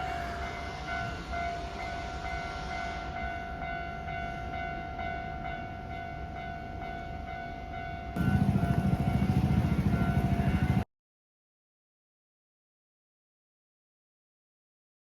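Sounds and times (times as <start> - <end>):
level crossing alarm ringing: 8.2 - 10.8.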